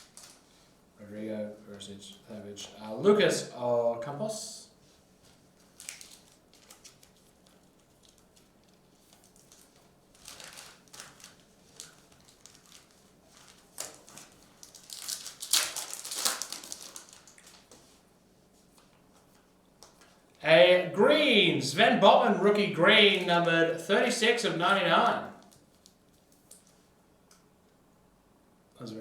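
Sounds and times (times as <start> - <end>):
foil wrapper crinkling and tearing: 5.6 - 17.8.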